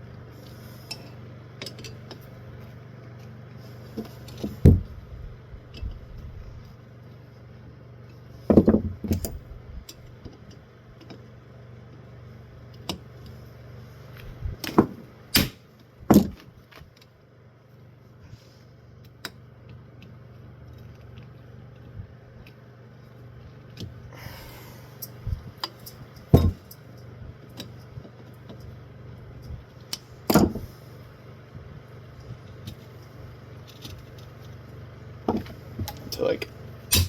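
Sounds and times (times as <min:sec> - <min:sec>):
steady low hum: 0:00.0 - 0:37.0
knocks and clicks of parts: 0:04.0 - 0:05.0, 0:08.5 - 0:09.4, 0:14.6 - 0:16.9, 0:25.6 - 0:26.8, 0:29.9 - 0:30.7, 0:35.3 - 0:36.1.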